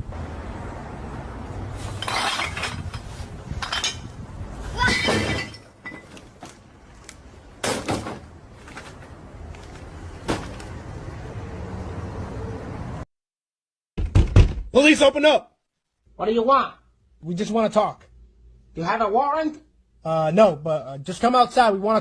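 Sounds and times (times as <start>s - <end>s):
crashes and clatters: 1.8s - 4.0s.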